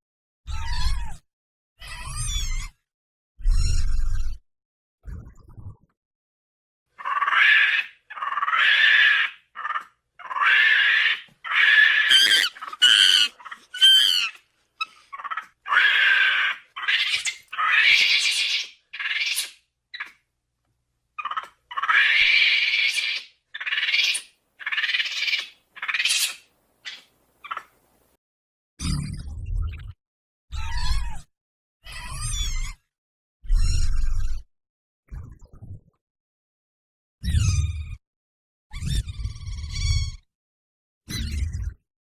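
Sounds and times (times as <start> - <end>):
shrill creature calls and squeals: 1.8 - 2.7, 7.0 - 20.2, 21.2 - 27.7, 31.8 - 32.8, 38.7 - 40.3.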